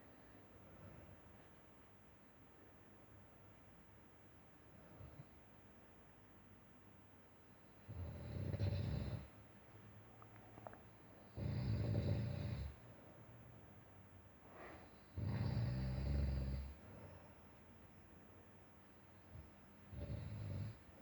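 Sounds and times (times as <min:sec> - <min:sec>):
quiet breathing: 0:00.0 - 0:01.8, 0:04.6 - 0:05.6, 0:10.0 - 0:17.9.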